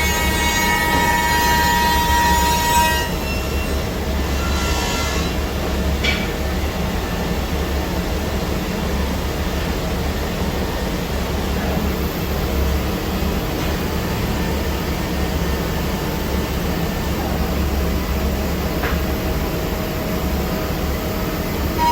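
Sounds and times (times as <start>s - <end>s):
cnc router machining wood: 0.0s - 5.6s.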